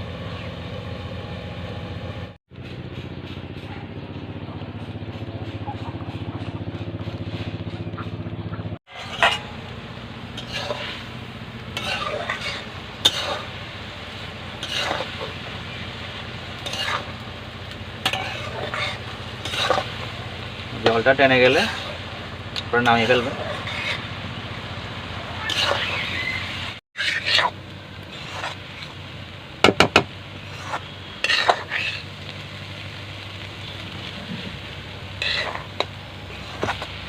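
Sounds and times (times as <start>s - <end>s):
steady low hum: 0.0s - 25.8s
spatula scraping cooking pot: 8.9s - 9.6s, 10.3s - 11.1s, 11.7s - 13.6s, 14.5s - 15.8s, 16.6s - 17.2s, 18.0s - 20.2s, 22.8s - 24.1s, 25.4s - 29.0s, 29.9s - 32.1s, 35.2s - 37.0s.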